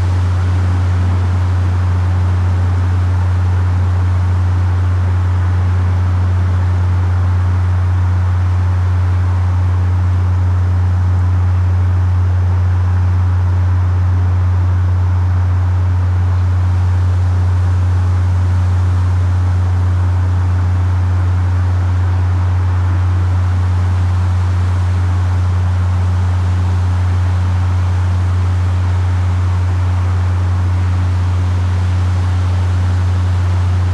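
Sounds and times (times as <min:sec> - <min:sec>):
even hiss: 0:00.0 - 0:06.5
low-pitched hum: 0:00.0 - 0:33.9.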